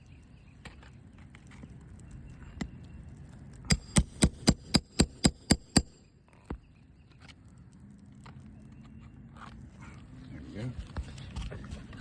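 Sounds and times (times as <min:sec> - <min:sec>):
hammer striking metal nail puller: 0:03.7 - 0:06.0.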